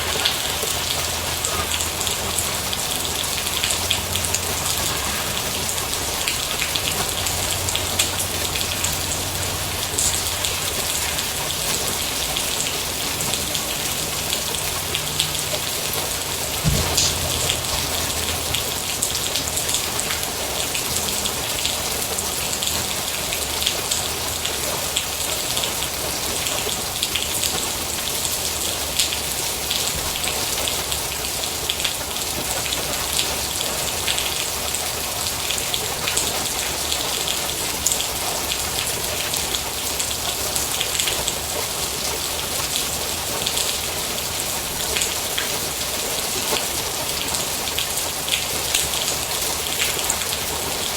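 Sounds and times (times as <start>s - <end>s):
rain on a hard surface: 0.0s - 50.9s
low thump: 16.6s - 18.6s.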